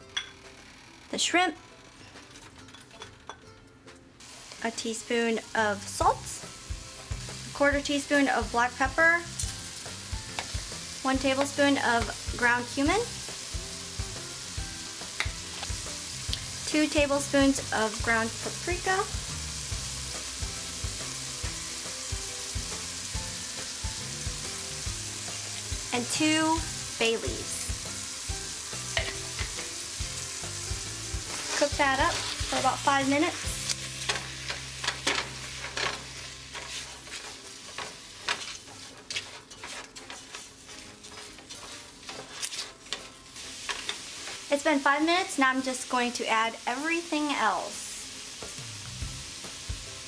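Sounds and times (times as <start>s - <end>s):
meat sizzling in a hot pan: 4.2s - 50.0s
utensil scraping a pan: 31.2s - 44.5s.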